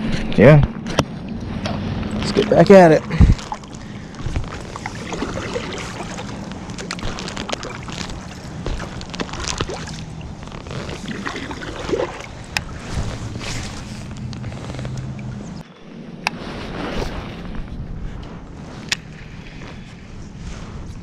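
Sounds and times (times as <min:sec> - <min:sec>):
water washing: 0:02.1 - 0:14.1.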